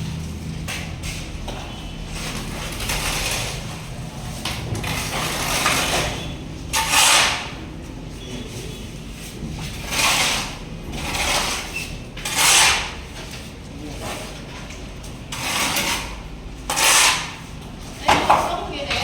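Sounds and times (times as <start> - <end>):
rough scraping strokes: 4.8 - 7.6, 9.1 - 13.1, 15.3 - 17.4.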